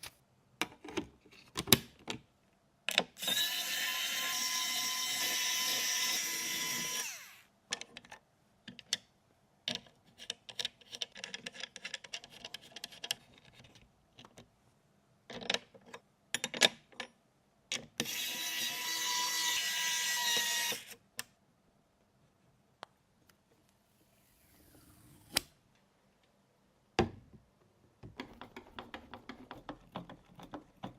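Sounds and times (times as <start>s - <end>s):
steady electric whirr: 3.2s - 7.4s, 24.0s - 25.6s
computer parts clicking and knocking: 28.0s - 30.9s.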